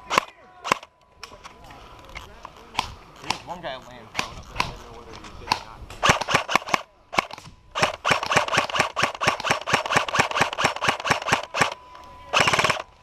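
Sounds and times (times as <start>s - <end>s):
airsoft guns firing: 0.0s - 0.9s, 5.4s - 13.0s.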